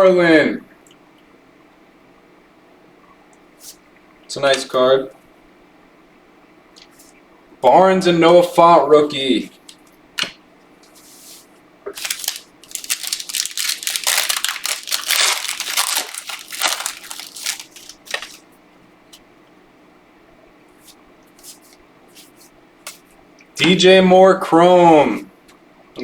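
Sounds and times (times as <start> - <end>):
foil wrapper crinkling: 11.0 - 18.4.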